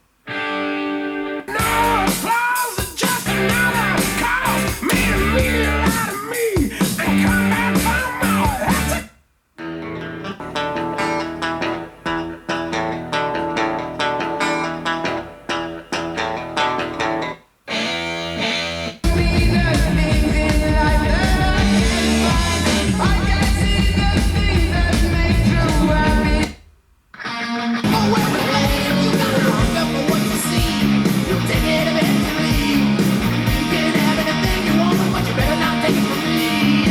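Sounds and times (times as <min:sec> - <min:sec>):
guitar-based music: 0:00.2 - 0:36.9
steady bass beat: 0:03.2 - 0:09.0, 0:19.0 - 0:26.5, 0:27.9 - 0:36.9.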